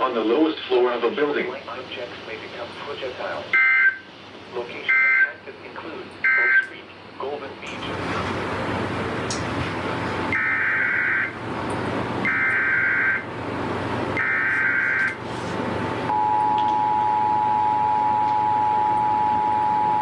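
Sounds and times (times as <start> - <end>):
two-tone attention signal: 16.1 - 20.0.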